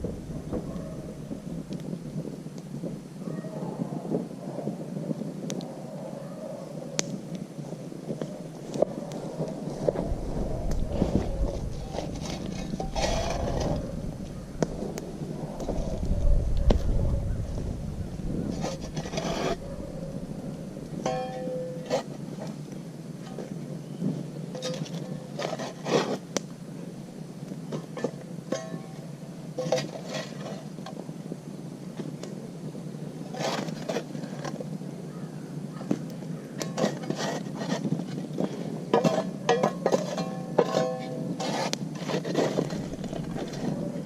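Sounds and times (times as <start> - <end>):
metal shovel scraping coals: 8.1 - 31.1, 33.2 - 34.8, 36.5 - 44.0.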